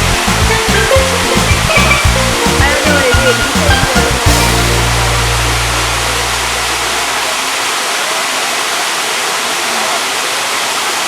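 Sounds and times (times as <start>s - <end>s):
low hum: 0.0s - 7.5s.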